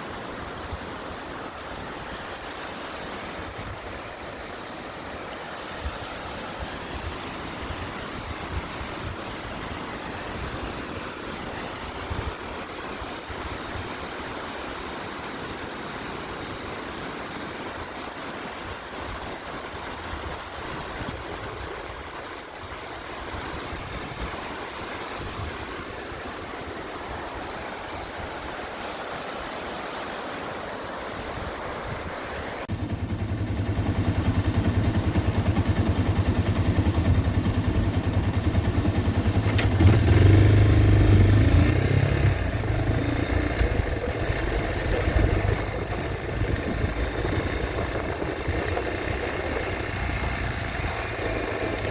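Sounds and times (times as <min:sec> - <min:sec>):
steady rushing noise: 0:31.4 - 0:51.9
motorcycle engine running: 0:32.7 - 0:51.9.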